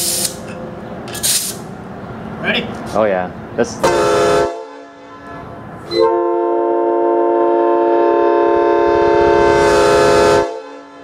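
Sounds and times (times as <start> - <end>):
locomotive air horn blast: 3.8 - 11.0.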